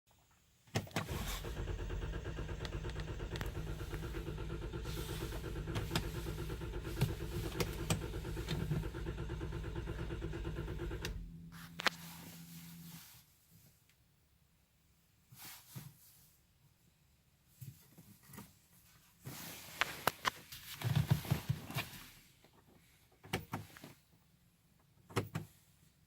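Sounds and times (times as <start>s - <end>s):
engine cranking by starter: 0.8s - 13.0s
faint steady hum: 1.1s - 14.8s.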